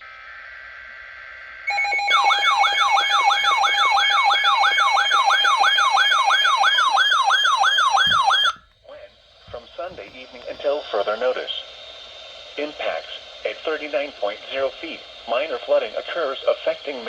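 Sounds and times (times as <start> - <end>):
electronic whooping siren: 1.7 - 8.6
steady high alert tones: 1.7 - 8.6.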